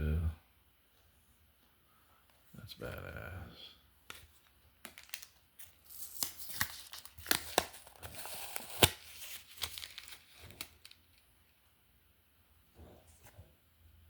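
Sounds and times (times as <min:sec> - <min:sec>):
plastic wrapping crinkling and tearing: 0:04.8 - 0:11.2.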